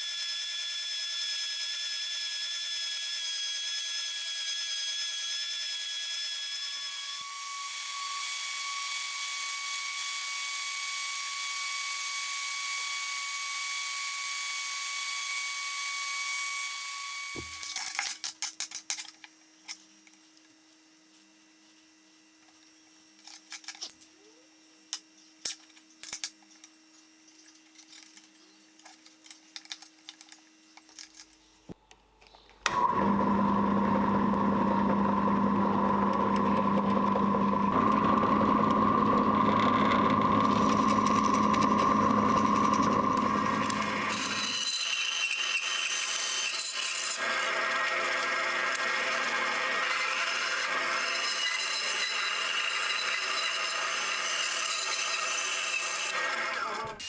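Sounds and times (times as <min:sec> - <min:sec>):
power tool running: 0:07.2 - 0:17.8, 0:32.6 - 0:57.0.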